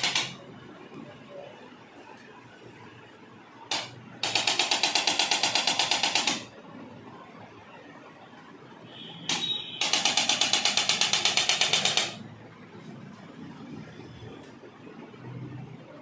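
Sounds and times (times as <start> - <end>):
electric percussion rapid taps: 0.0 - 0.4.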